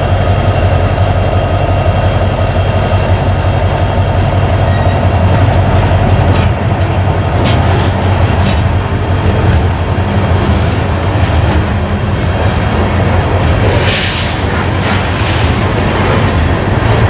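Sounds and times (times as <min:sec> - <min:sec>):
train rumbling on rails: 0:00.0 - 0:17.0
wheels clicking over rail joints: 0:03.8 - 0:17.0.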